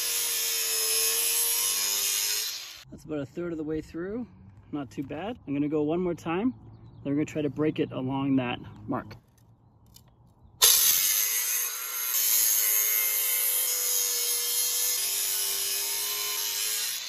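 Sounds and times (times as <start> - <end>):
angle grinder cutting masonry: 0.0 - 2.9, 10.6 - 17.0.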